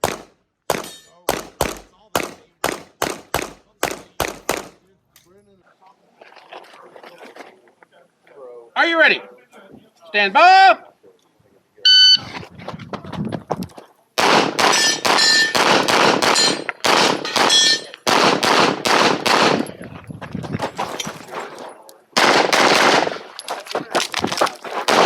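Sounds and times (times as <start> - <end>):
handgun shots: 0.0 - 4.8, 14.2 - 19.7, 22.2 - 25.0.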